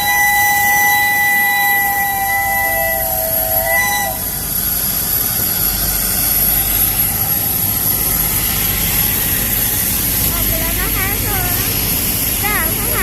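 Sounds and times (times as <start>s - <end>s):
steam locomotive whistle: 0.0s - 4.5s
passing train rushing: 0.0s - 13.0s.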